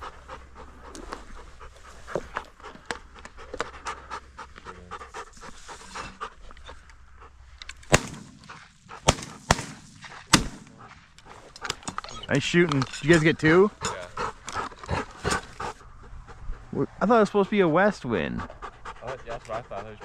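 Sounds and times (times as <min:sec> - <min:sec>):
dog panting: 0:00.0 - 0:20.0
shotgun shots: 0:07.9 - 0:11.0.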